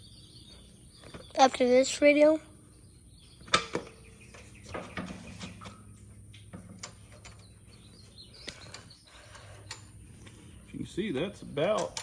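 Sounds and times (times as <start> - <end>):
metal hardware clicks and clanks: 11.4 - 12.0.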